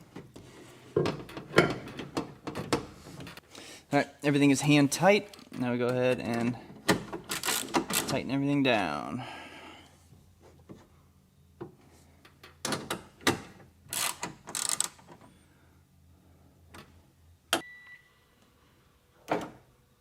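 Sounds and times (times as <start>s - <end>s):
ratchet clicking: 13.9s - 15.0s.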